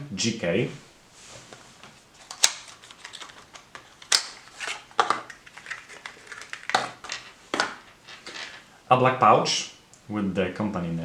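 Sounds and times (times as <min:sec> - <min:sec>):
packaging rustling: 0:01.2 - 0:08.7.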